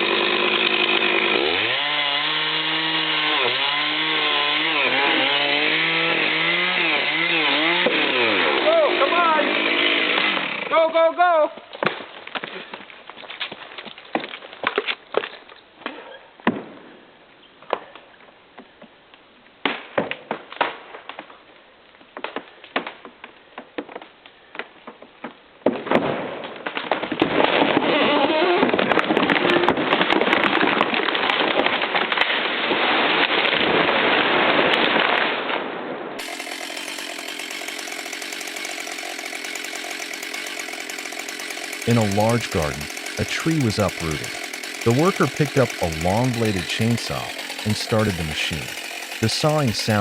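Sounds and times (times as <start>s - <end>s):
chainsaw running: 0.0s - 10.9s, 36.2s - 50.0s
tree wood cracking and snapping: 11.7s - 15.6s, 28.6s - 32.6s, 36.2s - 41.9s, 44.2s - 46.0s, 48.7s - 49.2s.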